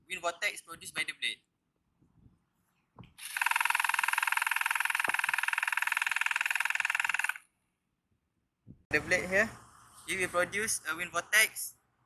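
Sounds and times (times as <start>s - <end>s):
electric mower motor whirring: 3.2s - 7.4s.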